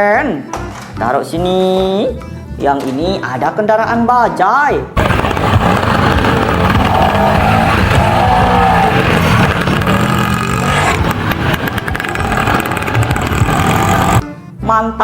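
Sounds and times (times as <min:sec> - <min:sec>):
vehicle engine running loudly: 0:05.0 - 0:14.2.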